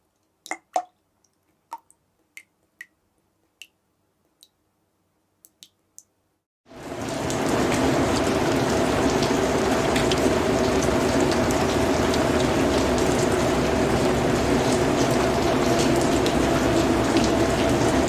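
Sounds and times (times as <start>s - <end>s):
raindrops ticking: 0.2s - 3.0s, 5.4s - 6.2s, 7.1s - 18.0s
steady rain hiss: 6.7s - 18.0s.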